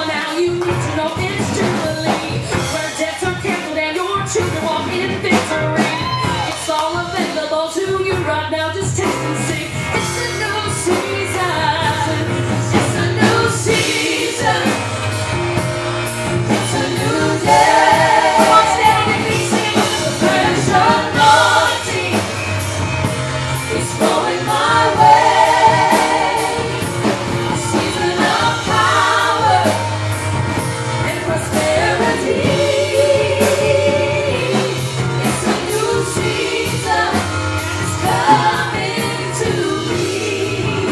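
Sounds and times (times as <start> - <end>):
band with steady bass line: 0.0 - 40.9
voices singing with vibrato: 11.4 - 15.2, 16.4 - 22.9, 23.5 - 30.2, 31.0 - 40.9.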